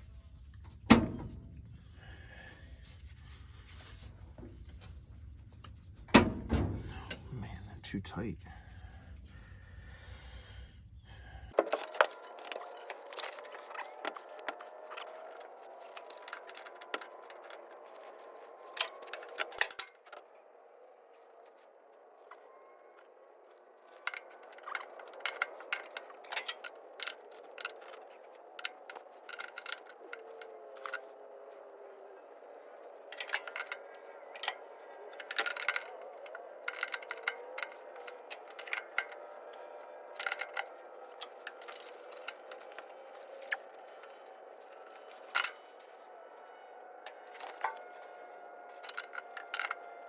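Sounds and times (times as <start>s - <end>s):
metal wrenches clinking and scraping: 11.5s - 20.3s, 23.4s - 50.0s.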